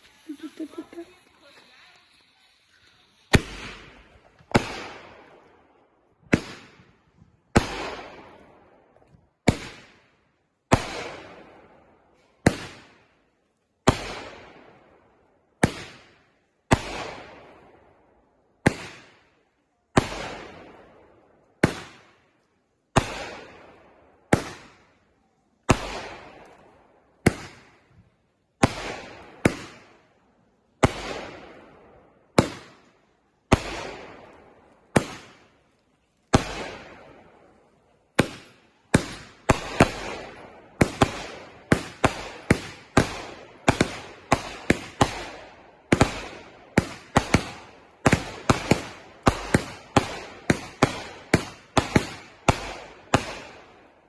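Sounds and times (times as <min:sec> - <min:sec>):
firework bangs with crackle: 0:00.0 - 0:05.5, 0:06.2 - 0:13.1, 0:13.8 - 0:15.0, 0:15.6 - 0:17.8, 0:18.6 - 0:19.3, 0:19.9 - 0:22.2, 0:22.9 - 0:24.9, 0:25.6 - 0:28.0, 0:28.6 - 0:30.2, 0:30.8 - 0:35.7, 0:36.3 - 0:37.4, 0:38.1 - 0:54.0.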